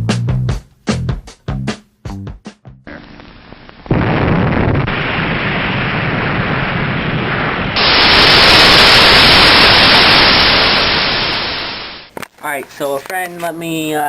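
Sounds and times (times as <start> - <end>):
harsh static hiss: 2.9 - 14.0.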